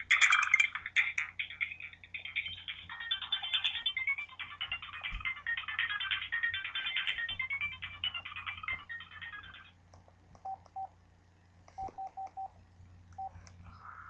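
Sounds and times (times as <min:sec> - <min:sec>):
phone ringtone melody: 0:01.4 - 0:09.7.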